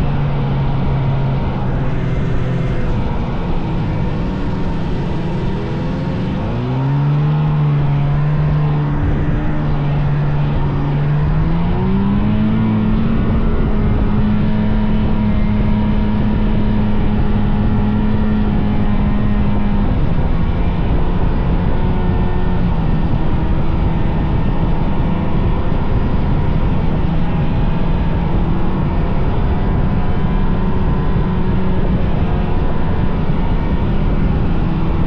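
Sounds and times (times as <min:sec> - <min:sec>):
snowmobile engine running: 0:00.0 - 0:35.0.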